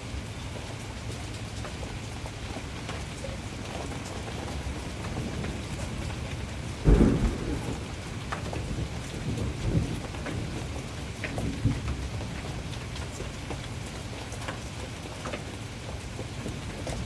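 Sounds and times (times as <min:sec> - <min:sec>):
steady rain falling: 0:00.0 - 0:17.0
thunder rumbles: 0:04.6 - 0:12.8
thunderclap: 0:06.8 - 0:10.5.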